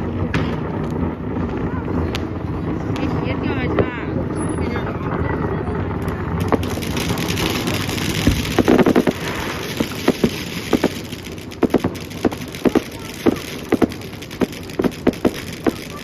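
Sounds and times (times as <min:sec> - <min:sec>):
fireworks crackling and popping: 0:00.0 - 0:16.0.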